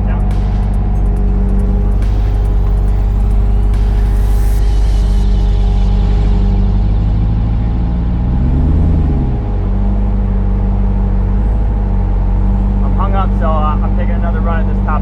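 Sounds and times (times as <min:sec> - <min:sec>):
engine droning and revving: 0:00.0 - 0:15.0.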